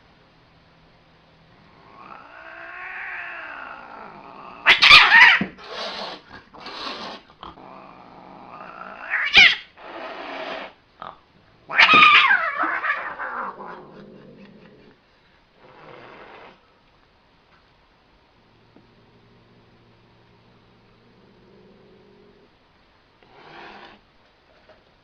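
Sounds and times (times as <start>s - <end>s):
cat hissing: 1.6s - 10.8s, 11.7s - 15.0s, 15.6s - 16.6s, 23.2s - 24.0s
cat yowling: 1.8s - 7.1s, 8.6s - 9.8s, 11.7s - 13.8s
cat screeching: 1.9s - 7.2s, 8.6s - 10.7s, 11.7s - 13.8s.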